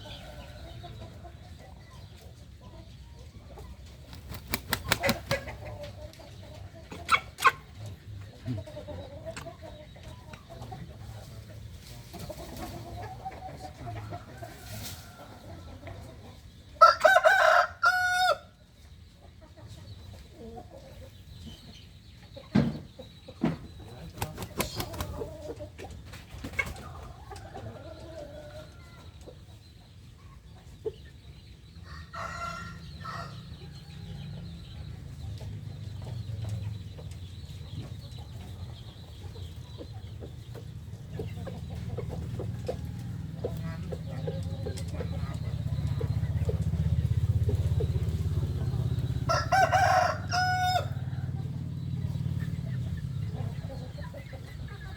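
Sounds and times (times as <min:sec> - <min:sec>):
rooster crowing: 0:16.8 - 0:18.5, 0:49.3 - 0:51.3.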